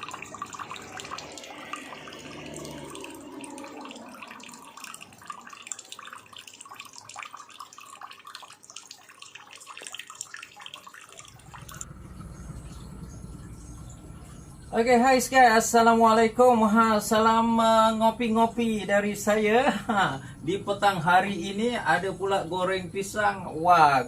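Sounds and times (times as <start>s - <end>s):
water splashing over small waterfall: 0.0s - 11.9s
water drips: 0.0s - 15.7s
low steady hum: 0.0s - 24.0s.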